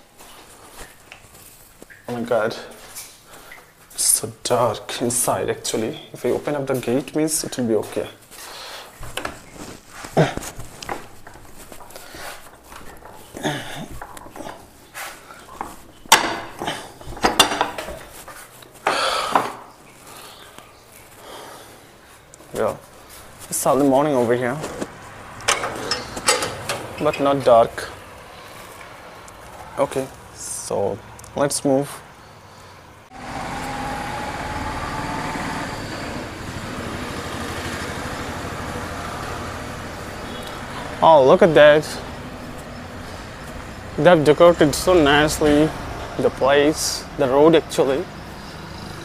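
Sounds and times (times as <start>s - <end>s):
vehicle engine and road noise: 20.2s - 49.0s
metal gate scraping: 25.3s - 27.9s
metal gate latch clanking: 25.4s - 27.4s.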